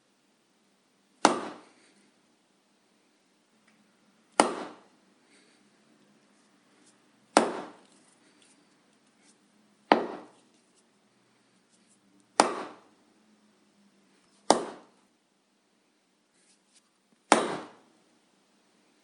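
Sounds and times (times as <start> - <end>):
rubber mallet striking wood: 1.2 - 1.7, 4.3 - 4.9, 7.3 - 7.8, 9.9 - 10.4, 12.4 - 12.9, 14.4 - 14.9, 17.3 - 17.8.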